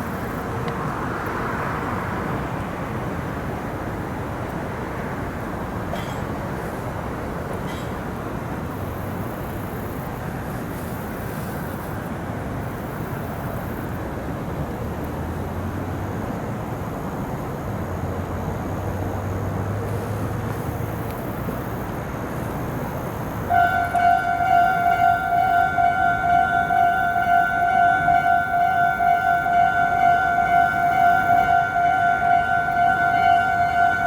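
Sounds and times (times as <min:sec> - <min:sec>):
passing vehicles rumbling: 0:00.0 - 0:05.9, 0:14.0 - 0:34.0
low hum: 0:23.5 - 0:34.0.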